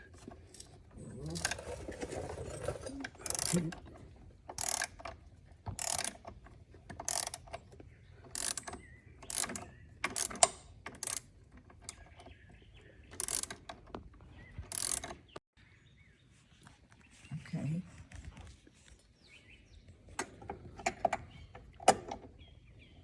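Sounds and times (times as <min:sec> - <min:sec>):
ratchet wrench clicking: 0:03.2 - 0:03.6, 0:04.5 - 0:05.1, 0:05.8 - 0:06.3, 0:07.0 - 0:07.6, 0:08.3 - 0:11.3, 0:13.2 - 0:13.6, 0:14.7 - 0:15.2.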